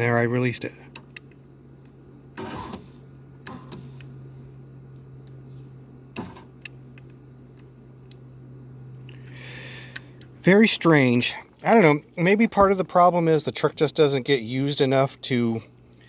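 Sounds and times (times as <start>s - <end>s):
crickets chirping: 0.0s - 16.0s.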